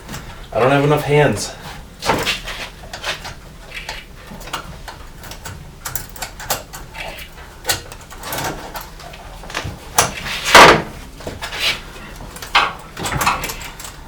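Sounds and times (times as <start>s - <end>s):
clicks and knocks on engine parts: 2.0s - 11.6s, 12.2s - 14.0s.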